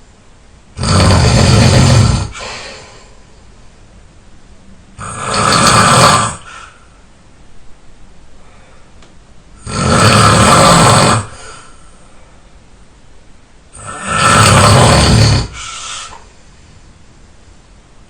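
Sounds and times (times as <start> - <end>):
person snoring: 0.8 - 3.2, 5.0 - 6.8, 9.6 - 11.7, 13.8 - 16.2.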